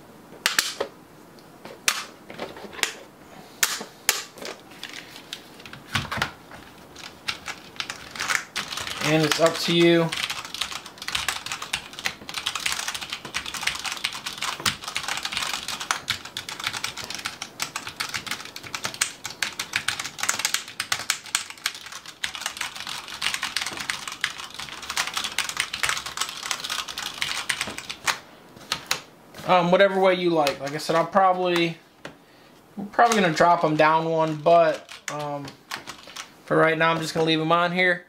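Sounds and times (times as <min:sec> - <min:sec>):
mechanical keyboard typing: 0:06.9 - 0:29.1, 0:33.0 - 0:36.3.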